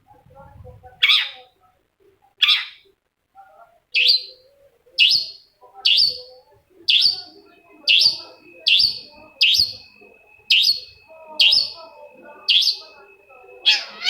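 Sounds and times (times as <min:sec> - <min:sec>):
bird chattering: 0:01.0 - 0:01.5, 0:02.4 - 0:02.8, 0:04.0 - 0:04.4, 0:05.0 - 0:14.0
bird giving sharp calls: 0:06.9 - 0:12.9, 0:13.6 - 0:14.0.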